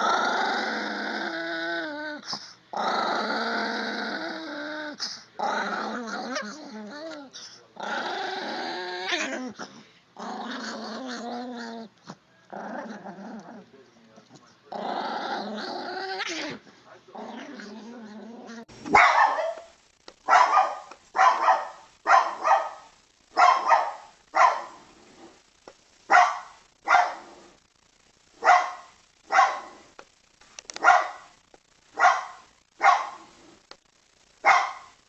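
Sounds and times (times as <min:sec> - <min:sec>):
dog growling: 0:00.0 - 0:18.7
dog barking: 0:18.9 - 0:19.7, 0:20.3 - 0:24.8, 0:26.1 - 0:27.3, 0:28.4 - 0:29.8, 0:30.8 - 0:31.3, 0:32.0 - 0:33.2, 0:34.4 - 0:35.0.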